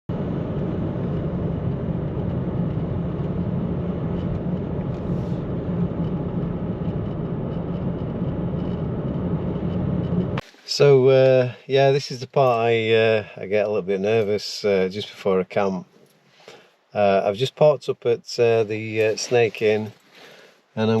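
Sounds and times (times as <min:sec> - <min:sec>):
car road and engine noise: 0:00.1 - 0:14.5.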